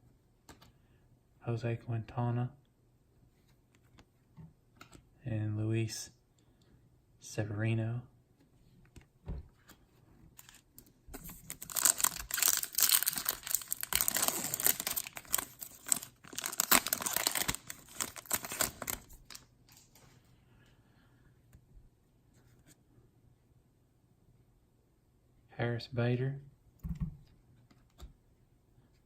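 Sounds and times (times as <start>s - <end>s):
foil wrapper tearing and crinkling: 11.4s - 19.4s.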